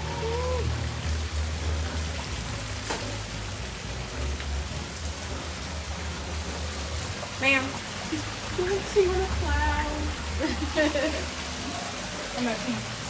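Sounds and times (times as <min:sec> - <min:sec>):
music with heavy bass: 0:00.0 - 0:07.0.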